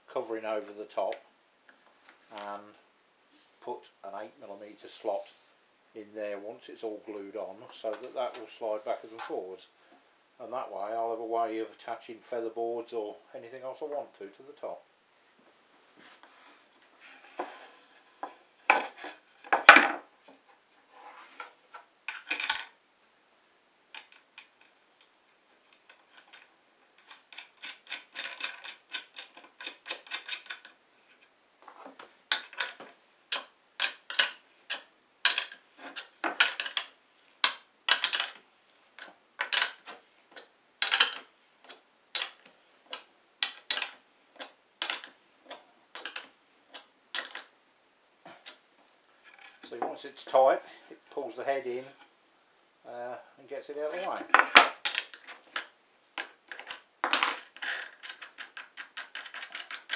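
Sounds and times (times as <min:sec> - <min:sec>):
metal bolt and nut clicking: 0:25.7 - 0:31.2, 0:32.3 - 0:38.4, 0:39.0 - 0:47.5, 0:54.3 - 0:59.9.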